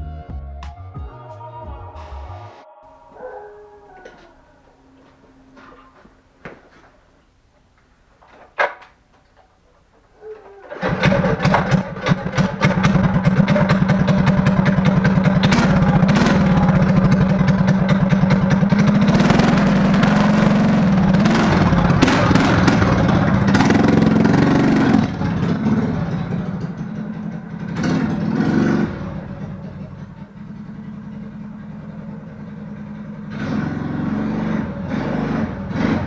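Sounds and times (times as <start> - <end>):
small motorbike engine running: 10.7 - 36.0.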